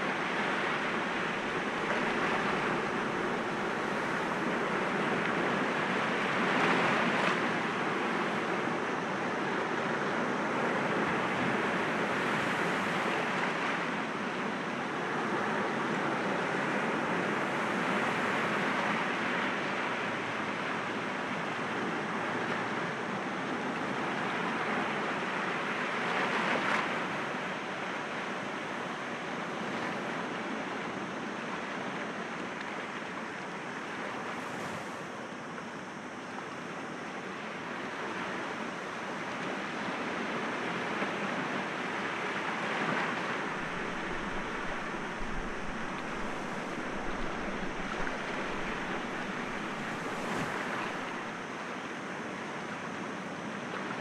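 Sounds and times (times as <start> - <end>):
sea waves breaking on rocks: 42.7 - 51.5.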